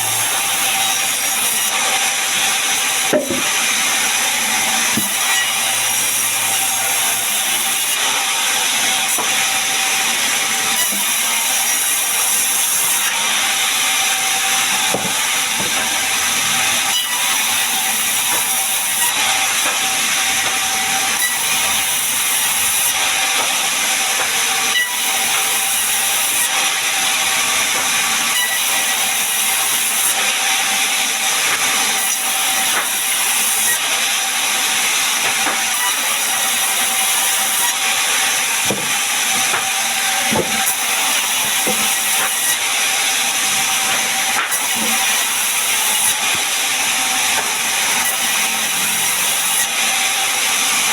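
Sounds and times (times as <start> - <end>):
sawmill saw running: 0.0 - 50.9.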